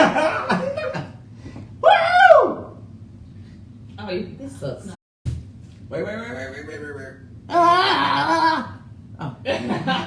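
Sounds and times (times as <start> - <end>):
person whooping: 1.8 - 2.8, 7.5 - 8.8.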